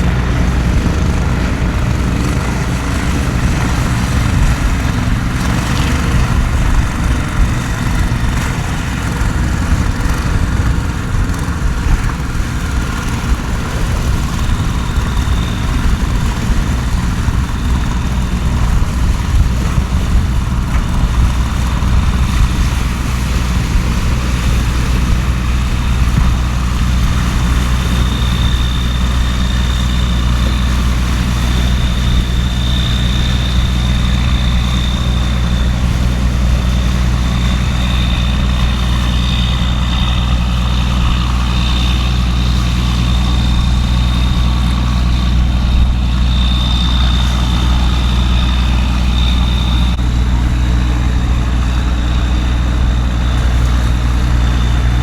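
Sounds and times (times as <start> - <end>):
engine idling: 0.0 - 55.0
heavy rain hiss: 0.0 - 55.0.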